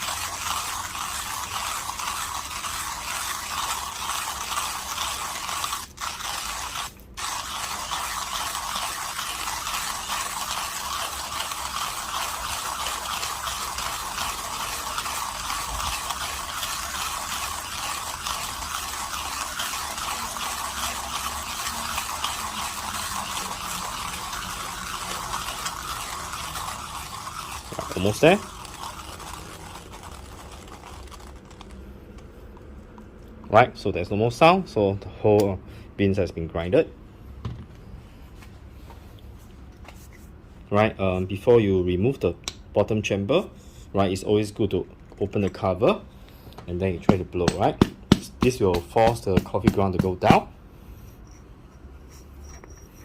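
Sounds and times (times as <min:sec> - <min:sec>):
hand grinder crunching coffee beans: 0:00.0 - 0:32.6, 0:46.8 - 0:50.5.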